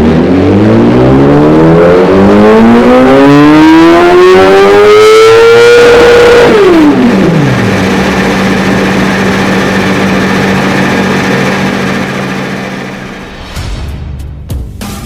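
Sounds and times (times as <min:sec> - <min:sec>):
motorcycle engine revs falling: 0:02.3 - 0:13.7.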